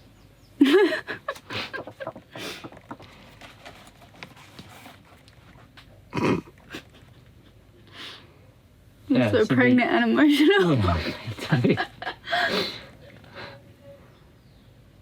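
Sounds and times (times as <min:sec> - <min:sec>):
woman sobbing: 0:00.6 - 0:02.7, 0:10.3 - 0:12.9
shaky breaths and sniffs: 0:01.4 - 0:05.8.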